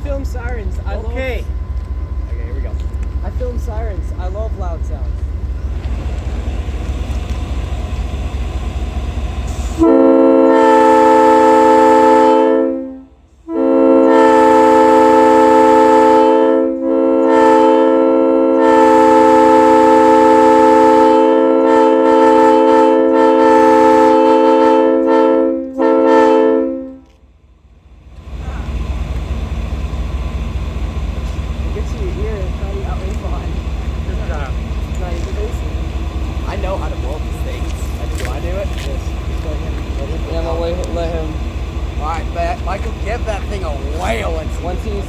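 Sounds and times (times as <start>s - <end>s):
low steady rumble: 0.0s - 45.0s
locomotive air horn: 9.5s - 27.2s.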